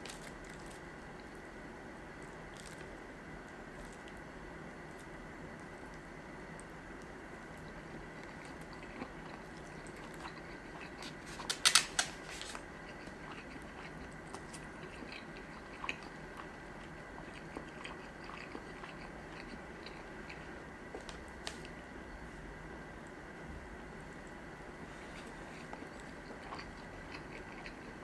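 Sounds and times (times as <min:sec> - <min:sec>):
person chewing: 0:07.6 - 0:21.8, 0:25.0 - 0:28.0.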